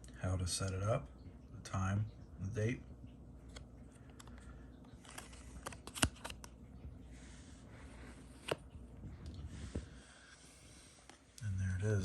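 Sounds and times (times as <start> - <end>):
paper rustling: 4.9 - 6.6, 7.3 - 8.8.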